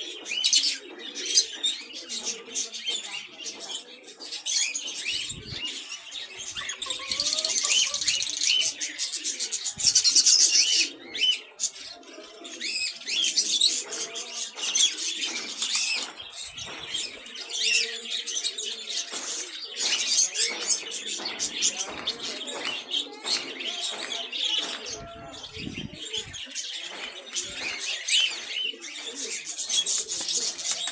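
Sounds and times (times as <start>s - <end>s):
caged birds chirping: 0.0s - 30.9s.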